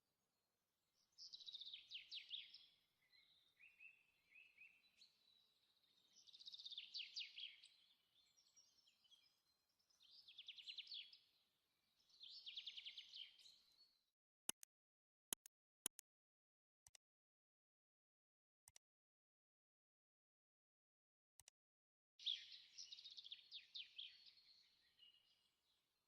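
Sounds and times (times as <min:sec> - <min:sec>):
soft bird chirps: 0:00.9 - 0:14.1, 0:22.2 - 0:26.0.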